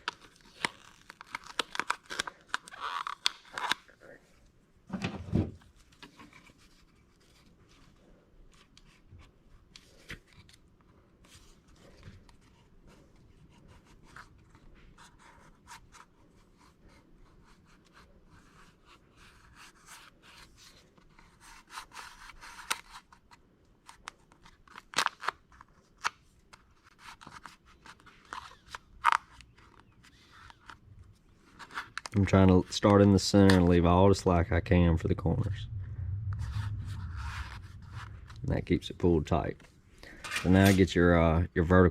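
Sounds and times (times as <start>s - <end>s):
vinyl film crinkling and crackling: 0.0s - 4.4s, 22.4s - 39.8s.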